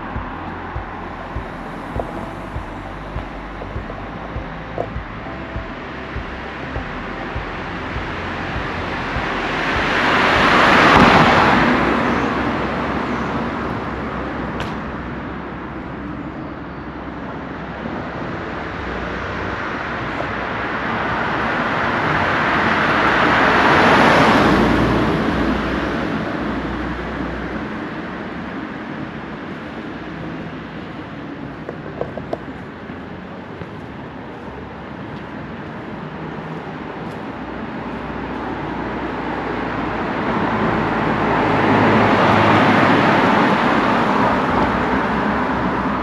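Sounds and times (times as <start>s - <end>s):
cars passing: 0.0s - 46.0s.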